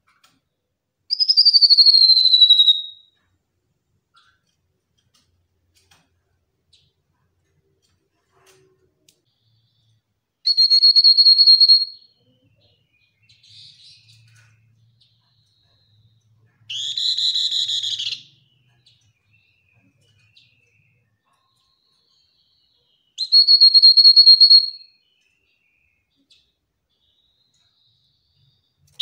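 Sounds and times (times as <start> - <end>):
bird trilling: 1.1 - 3.0, 10.5 - 12.0, 16.7 - 18.3, 23.2 - 24.8.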